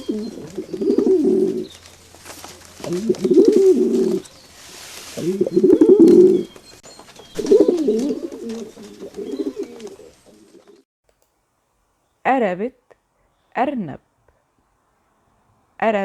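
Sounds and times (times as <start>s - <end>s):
pigeon cooing: 0.0s - 10.8s.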